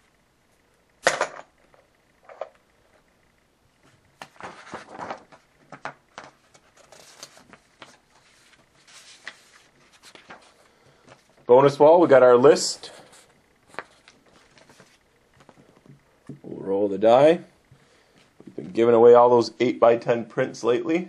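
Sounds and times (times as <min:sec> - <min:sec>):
rustling: 0:03.8 - 0:11.5, 0:12.9 - 0:15.9.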